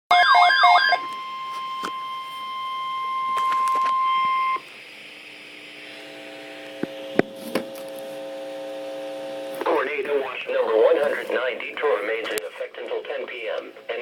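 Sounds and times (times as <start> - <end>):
faint hum: 0.8 - 14.0
radio hiss: 8.0 - 14.0.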